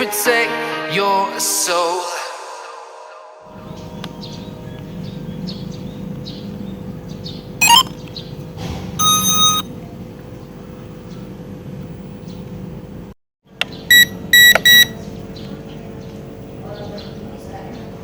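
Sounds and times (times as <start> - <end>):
electronic beeps: 7.6 - 8.0, 9.0 - 9.7, 13.9 - 15.0.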